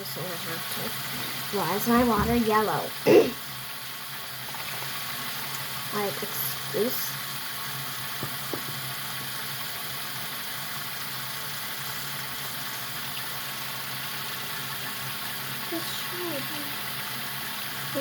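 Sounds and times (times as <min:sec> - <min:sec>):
water running from tap: 0:00.0 - 0:18.0.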